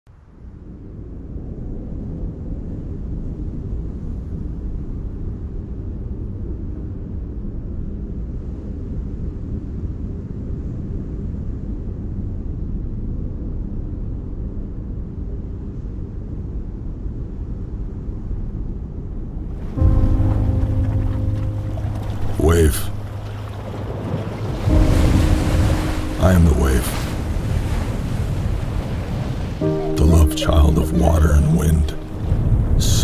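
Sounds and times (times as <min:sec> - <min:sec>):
ocean surf rumbling: 0:19.3 - 0:33.0.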